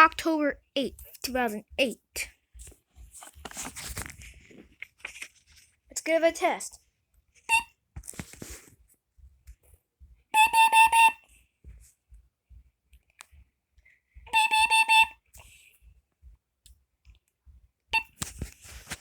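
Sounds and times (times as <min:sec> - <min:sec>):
carbon monoxide alarm beeping: 0:10.4 - 0:11.2, 0:14.3 - 0:15.2.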